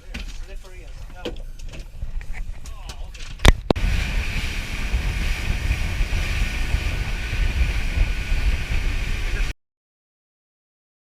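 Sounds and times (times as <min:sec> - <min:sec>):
wind rumble on microphone: 0:00.2 - 0:09.5
engine running: 0:03.5 - 0:09.5.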